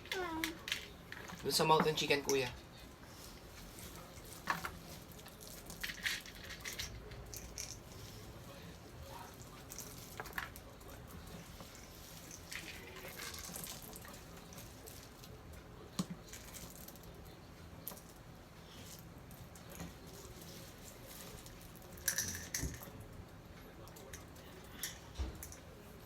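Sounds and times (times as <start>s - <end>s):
plastic toy pieces clicking and rattling: 4.5s - 7.8s, 21.9s - 22.9s.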